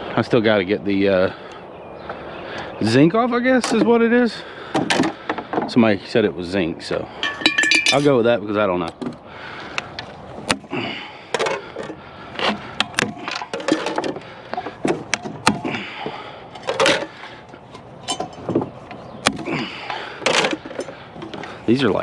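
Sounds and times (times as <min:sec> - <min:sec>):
fan parts clattering: 0:07.1 - 0:08.3, 0:10.4 - 0:22.0.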